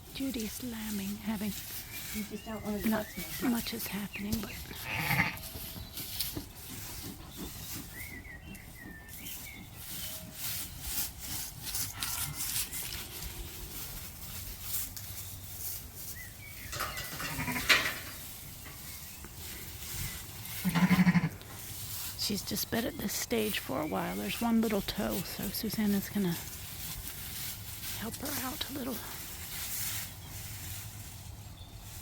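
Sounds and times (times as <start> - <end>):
rustling and scraping: 0.0 - 32.0
sheep bleating: 4.8 - 5.5, 20.6 - 21.4.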